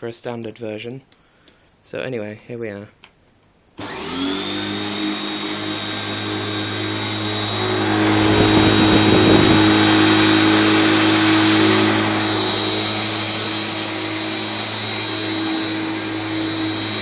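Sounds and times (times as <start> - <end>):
vacuum cleaner motor whine: 3.8 - 17.0.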